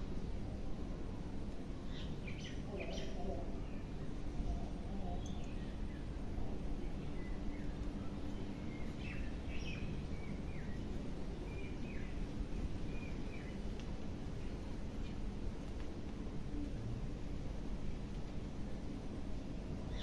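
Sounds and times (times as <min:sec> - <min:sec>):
small birds chirping: 0:01.8 - 0:14.7.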